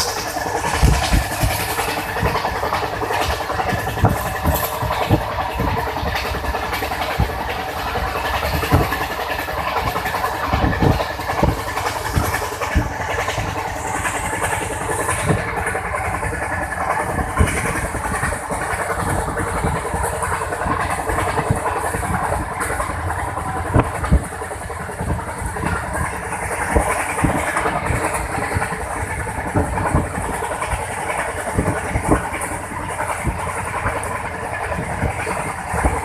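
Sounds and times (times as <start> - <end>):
sharp knocks: 0.0 - 6.4
train wheels rumbling on track: 0.0 - 36.0.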